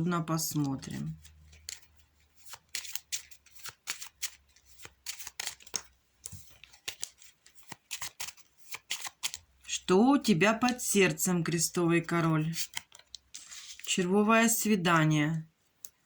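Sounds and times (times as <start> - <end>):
playing cards snapping and slapping: 1.5 - 9.4.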